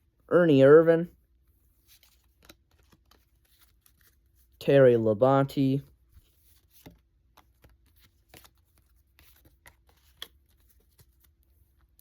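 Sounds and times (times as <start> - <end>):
trading cards clicking and rustling: 1.8 - 4.6, 6.2 - 12.0.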